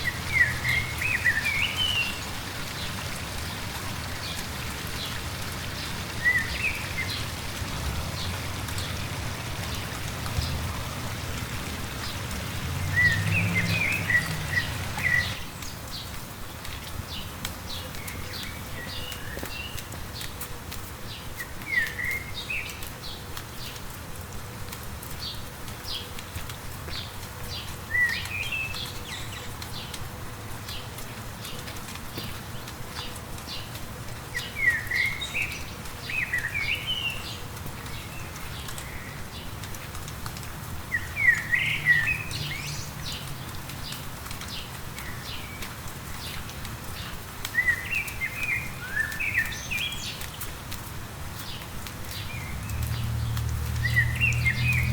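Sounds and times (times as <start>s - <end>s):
songbird chirping: 0.0s - 16.1s, 40.8s - 50.5s, 51.4s - 54.9s
light rain with drop ticks: 0.0s - 54.9s.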